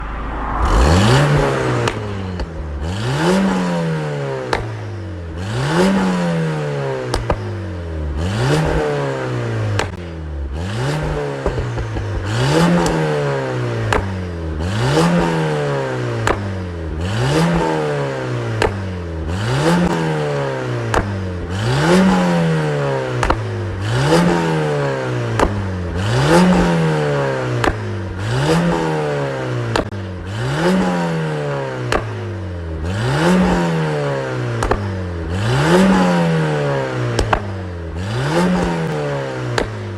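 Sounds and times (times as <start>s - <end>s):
car engine revving: 0.0s - 39.9s
exhaust pops and crackles: 4.4s - 4.8s, 7.0s - 7.6s, 9.7s - 10.1s, 11.0s - 13.0s, 13.8s - 14.2s, 16.2s - 16.5s, 18.5s - 18.8s, 20.8s - 22.2s, 23.1s - 24.3s, 25.3s - 26.8s, 27.6s - 28.6s, 29.7s - 30.0s, 31.9s - 32.3s, 34.5s - 36.0s, 37.1s - 37.6s, 38.3s - 39.9s.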